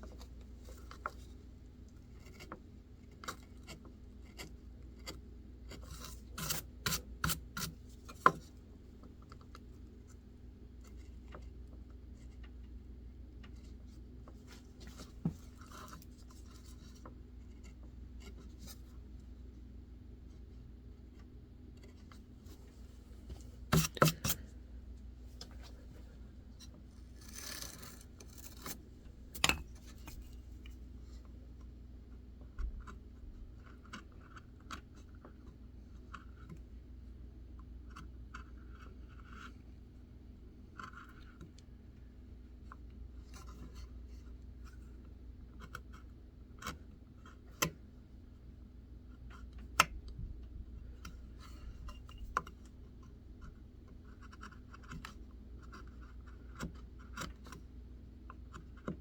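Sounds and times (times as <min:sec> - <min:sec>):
blade carving wood: 0:02.2 - 0:08.4, 0:23.7 - 0:24.5, 0:27.1 - 0:28.8.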